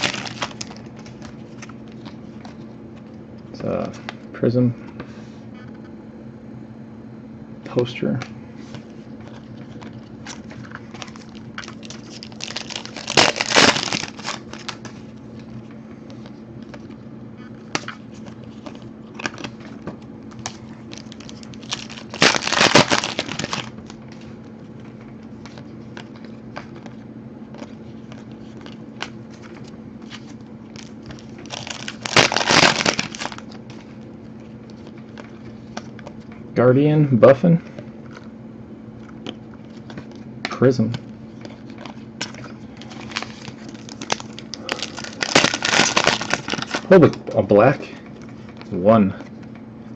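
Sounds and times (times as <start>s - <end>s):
wrappers crinkling and tearing: 0.0s - 2.6s, 9.2s - 15.0s, 17.7s - 24.2s, 27.6s - 34.0s, 41.3s - 47.5s
low steady hum: 0.0s - 49.9s.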